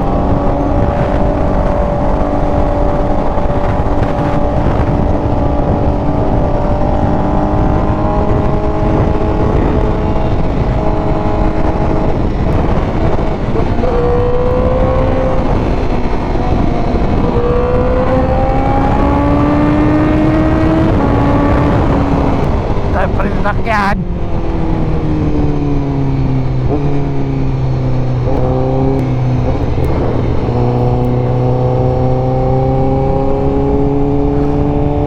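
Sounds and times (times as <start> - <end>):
motorcycle engine accelerating: 0.0 - 35.0
wind rushing: 0.0 - 35.0.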